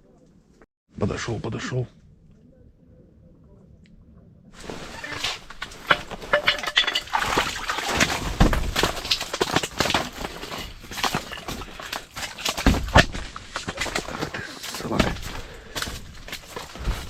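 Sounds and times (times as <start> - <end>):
heavy thumps: 4.6 - 17.0.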